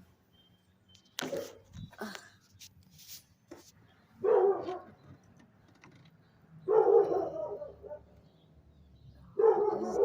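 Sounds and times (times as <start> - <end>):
dog barking: 4.2 - 4.9, 6.7 - 8.1, 9.4 - 10.0.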